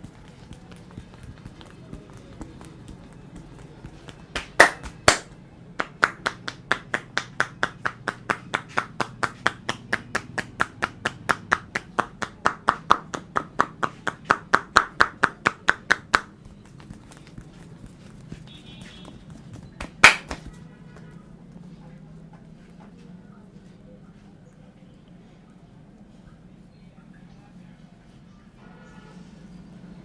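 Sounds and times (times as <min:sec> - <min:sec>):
hands clapping: 0:00.0 - 0:21.1
hollow hand slaps on head: 0:03.8 - 0:17.4, 0:18.8 - 0:20.6.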